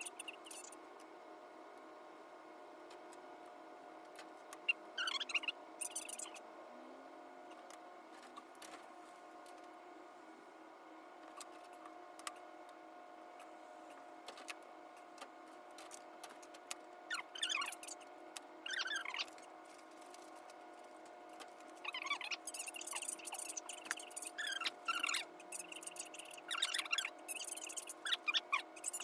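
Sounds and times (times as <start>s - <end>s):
faint steady hum: 0.0s - 29.0s
small ticks and clicks: 11.2s - 12.8s, 13.4s - 29.0s.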